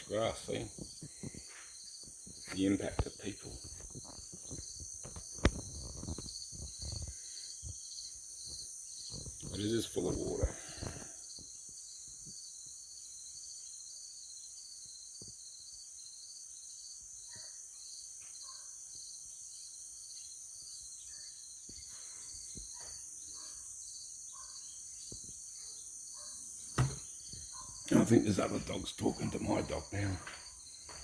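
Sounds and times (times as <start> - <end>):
insects chirping: 0.0 - 31.0
distant dogs barking: 22.7 - 24.8, 25.6 - 31.0.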